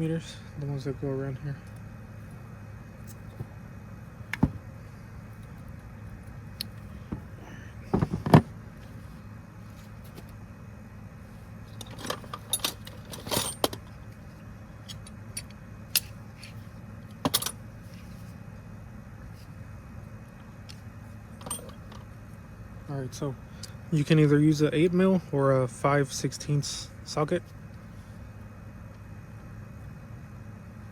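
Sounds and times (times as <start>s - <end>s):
low hum: 0.0s - 30.9s
metal tools clinking: 11.8s - 13.9s, 17.2s - 17.6s, 21.4s - 22.0s.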